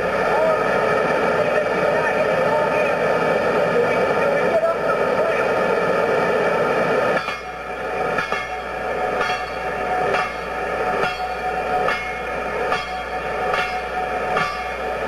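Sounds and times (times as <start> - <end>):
steady train tone: 0.0 - 15.0
train wheels clacking on rail joints: 7.2 - 15.0.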